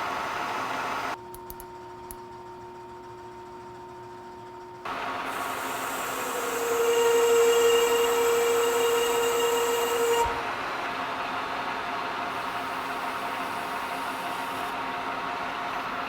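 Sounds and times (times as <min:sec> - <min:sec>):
machine tool whining with hiss: 0:04.9 - 0:16.0.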